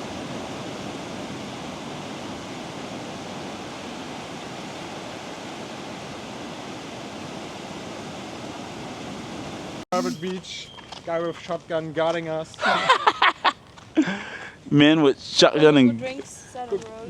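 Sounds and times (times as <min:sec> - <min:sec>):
ocean waves breaking on beach: 0:00.0 - 0:09.9.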